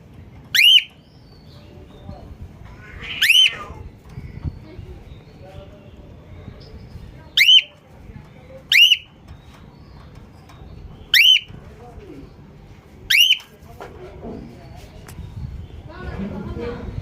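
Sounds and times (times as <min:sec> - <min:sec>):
cockatiel shrill whistle calls: 0:03.0 - 0:03.6.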